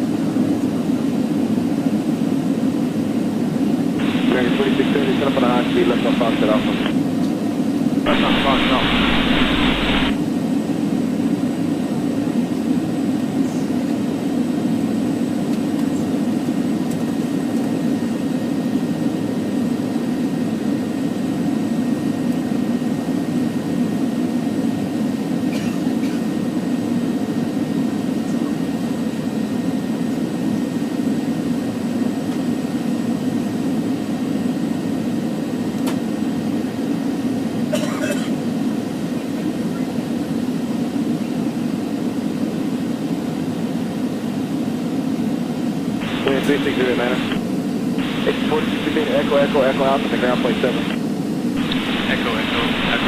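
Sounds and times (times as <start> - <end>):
jet engine cabin rumble: 0.0 - 23.7, 35.2 - 53.0.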